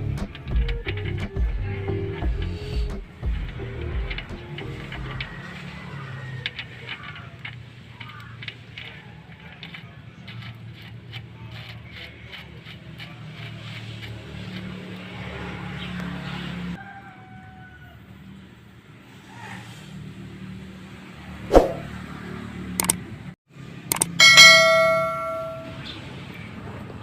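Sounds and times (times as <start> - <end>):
vehicle engine humming: 0.0 - 16.8.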